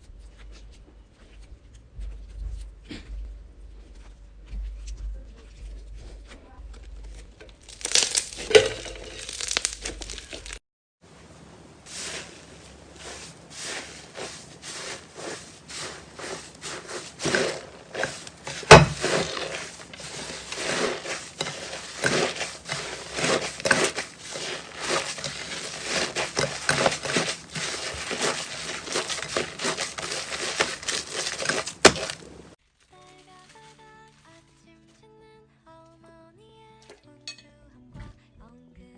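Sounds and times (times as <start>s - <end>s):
slime squelching and crackling: 6.6s - 10.6s, 11.8s - 34.2s.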